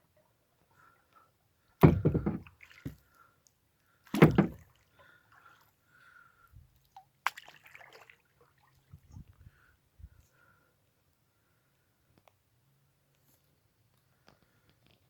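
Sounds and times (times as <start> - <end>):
paddle splashing in water: 1.8 - 3.0, 4.1 - 4.7
water dripping and sloshing: 1.8 - 3.3, 4.0 - 5.8, 6.8 - 9.2.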